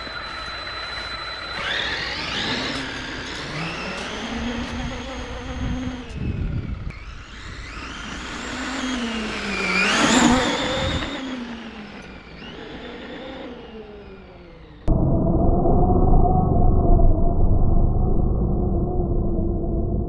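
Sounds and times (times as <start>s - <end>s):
electric motor whining: 0.0s - 14.9s.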